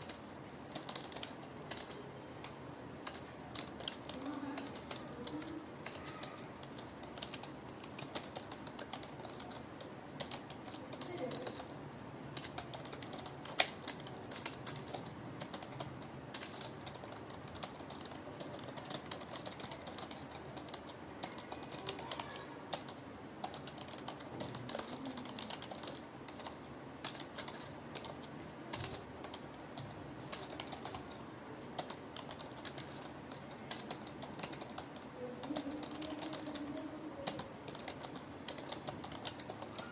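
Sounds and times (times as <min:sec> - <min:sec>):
computer keyboard typing: 0:00.0 - 0:39.9.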